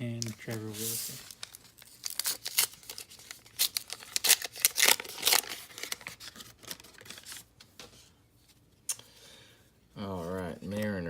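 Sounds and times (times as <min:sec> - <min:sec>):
wrapper crinkling and rustling: 0:00.1 - 0:07.6
foil pack tearing open: 0:01.2 - 0:07.4.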